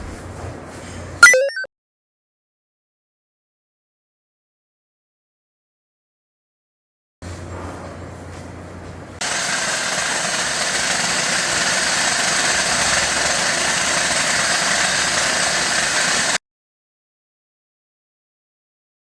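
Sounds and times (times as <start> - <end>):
machine whirring: 9.2 - 16.4.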